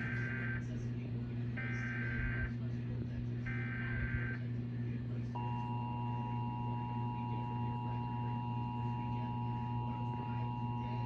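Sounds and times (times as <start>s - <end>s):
low hum: 0.0s - 11.0s
two-tone attention signal: 5.4s - 11.0s.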